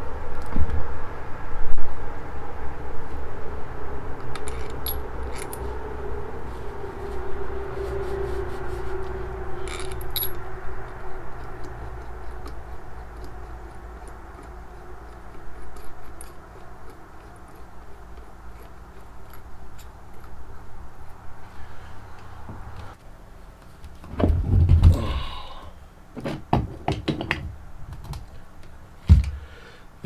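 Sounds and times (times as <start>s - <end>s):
steady low hum: 0.0s - 30.0s
metal tools clicking and scraping: 4.3s - 5.7s, 9.6s - 14.5s.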